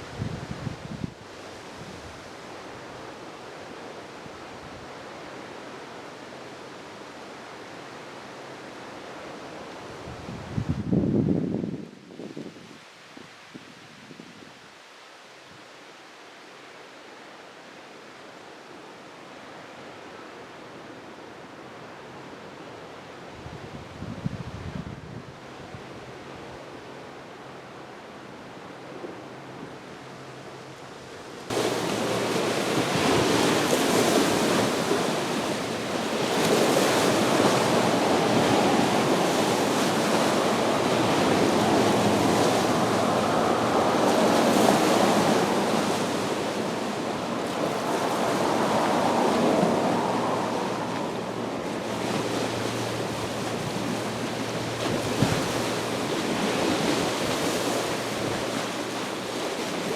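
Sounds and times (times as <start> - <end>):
lake waves splashing on shore: 31.4 - 59.9.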